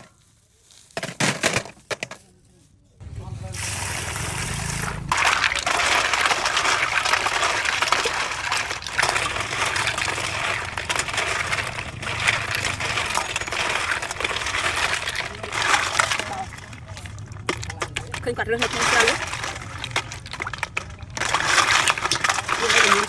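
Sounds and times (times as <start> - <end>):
snail shells clattering: 5.1 - 23.0.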